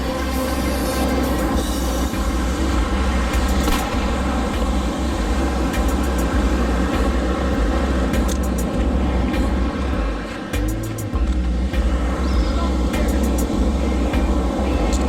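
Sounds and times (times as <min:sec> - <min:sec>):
breaking surf: 0:00.0 - 0:15.0
wind buffeting microphone: 0:01.4 - 0:15.0.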